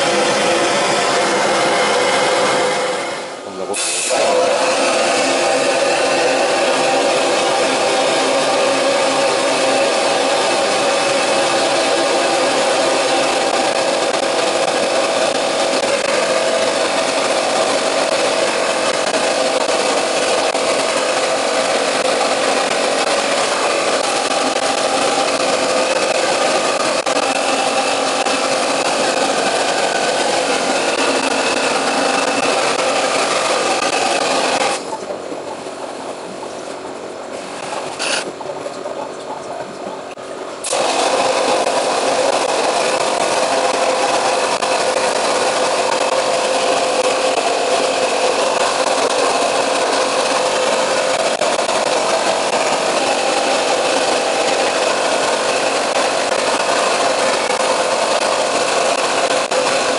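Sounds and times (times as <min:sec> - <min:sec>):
wet blasting spray hiss: 0:03.8 - 0:06.4
wet blasting gun hissing: 0:03.8 - 0:34.9
faint machine hum: 0:06.1 - 0:58.1.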